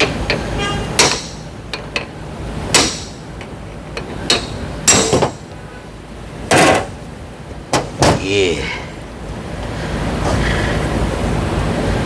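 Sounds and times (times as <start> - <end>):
metallic knocks and clicks: 0.0 - 5.4.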